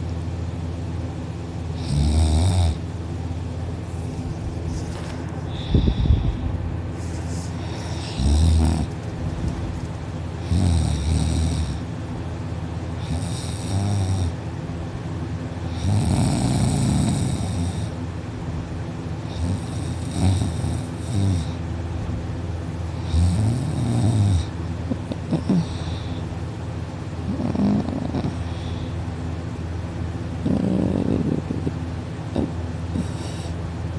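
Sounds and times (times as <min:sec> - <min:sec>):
person snoring heavily: 0:01.8 - 0:02.8, 0:05.4 - 0:06.5, 0:07.3 - 0:09.0, 0:10.4 - 0:11.9, 0:13.0 - 0:14.4, 0:15.7 - 0:18.0, 0:19.3 - 0:21.6, 0:22.9 - 0:24.6, 0:25.2 - 0:26.3, 0:27.2 - 0:29.0, 0:30.4 - 0:33.6.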